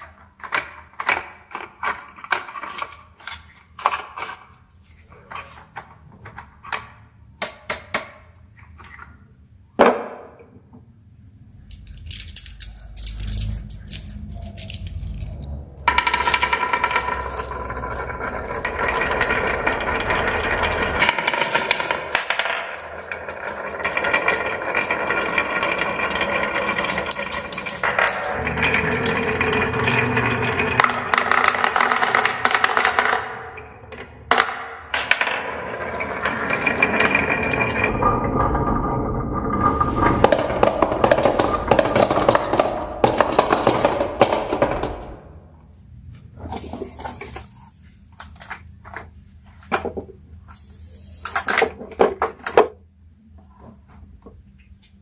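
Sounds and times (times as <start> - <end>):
marbles rolling down marble run: 11.7 - 45.4.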